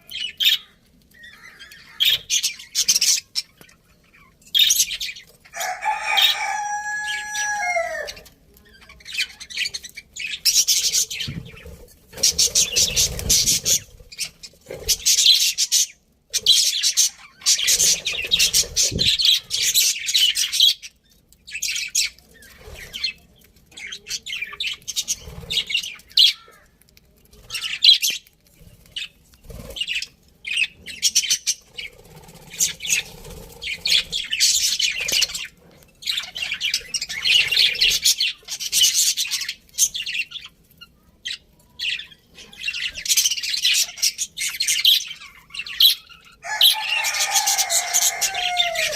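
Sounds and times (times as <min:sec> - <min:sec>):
budgerigars chirping and chattering: 0:00.0 - 0:40.6, 0:41.2 - 0:48.9.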